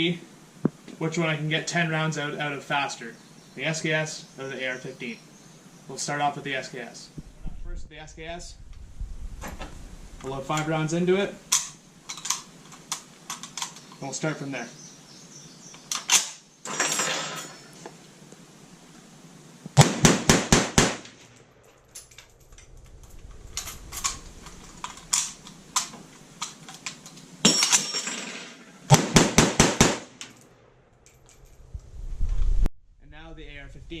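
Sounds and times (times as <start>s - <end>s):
metallic clicks of reloading: 11.5s - 14.0s, 21.3s - 27.9s
rifle shots: 19.8s - 21.7s, 27.4s - 30.9s.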